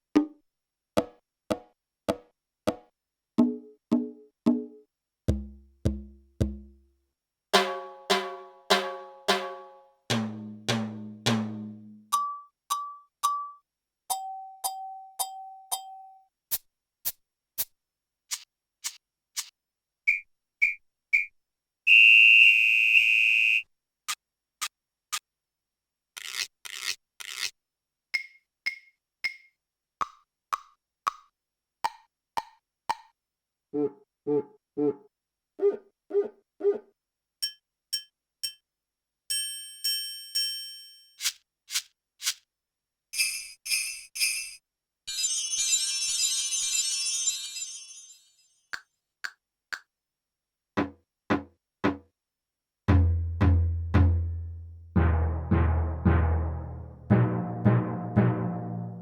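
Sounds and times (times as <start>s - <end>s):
electronic drum hits: 5.3s - 6.7s, 52.9s - 59.0s.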